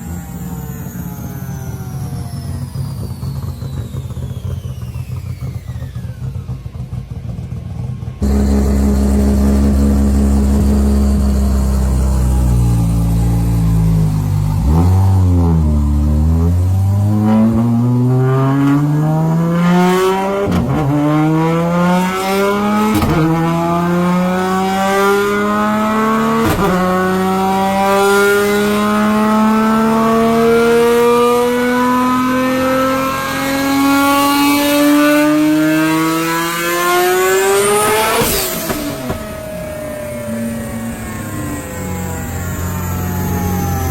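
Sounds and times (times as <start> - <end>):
car engine accelerating: 0.0 - 43.9.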